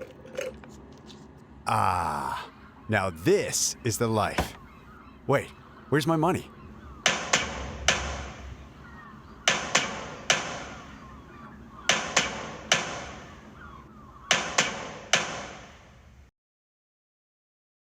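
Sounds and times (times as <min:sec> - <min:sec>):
faint chirping: 0:01.7 - 0:14.6
sharp ringing knocks: 0:07.0 - 0:08.5, 0:09.4 - 0:10.9, 0:11.9 - 0:13.2, 0:14.3 - 0:15.8.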